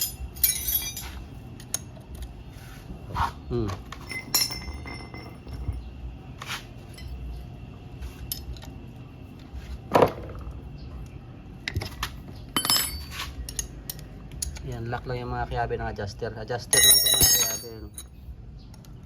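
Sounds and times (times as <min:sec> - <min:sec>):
metal tools clinking on metal: 0:00.0 - 0:02.3, 0:03.9 - 0:06.0, 0:06.8 - 0:07.3, 0:12.6 - 0:15.0, 0:16.6 - 0:18.2.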